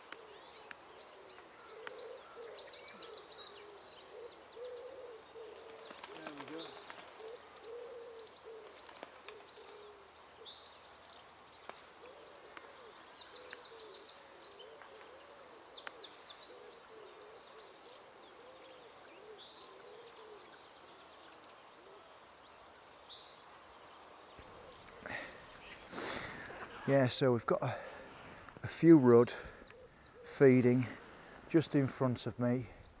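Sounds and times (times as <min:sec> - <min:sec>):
high twittering birdsong: 0:00.0 - 0:33.0
low bird call: 0:24.4 - 0:33.0.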